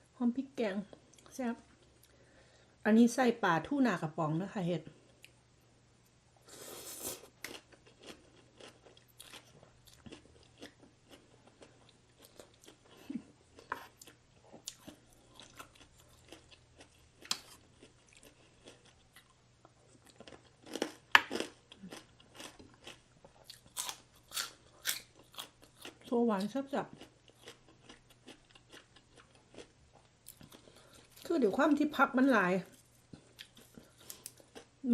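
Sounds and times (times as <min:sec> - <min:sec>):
person chewing crunchy food: 0:06.6 - 0:31.3, 0:32.9 - 0:34.8.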